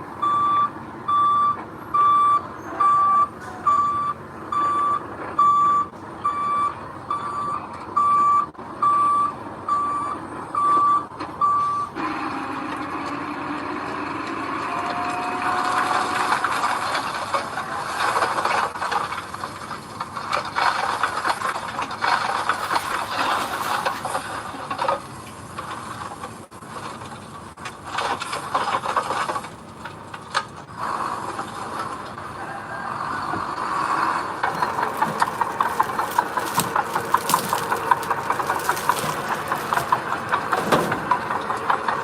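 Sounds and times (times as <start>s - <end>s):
diesel engine running: 0.0s - 42.0s
rattling scraping of soil: 15.8s - 29.9s, 34.4s - 42.0s
machinery knocks and clanks: 34.4s - 42.0s.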